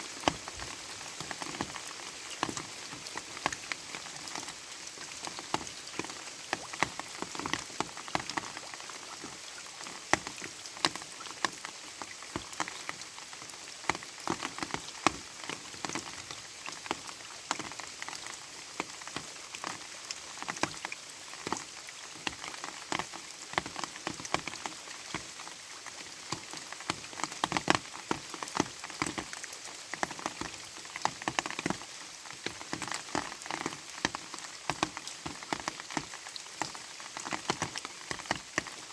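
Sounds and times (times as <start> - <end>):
light rain on hard surface: 0.0 - 38.9.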